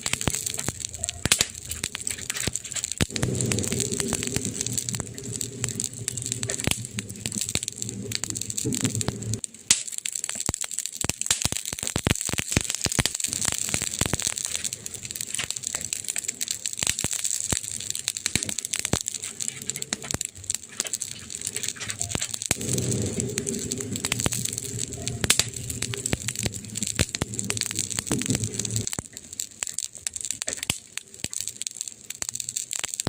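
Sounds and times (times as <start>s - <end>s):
burning wood crackling: 0.0s - 33.0s
low rumble: 1.6s - 9.4s, 20.9s - 29.1s.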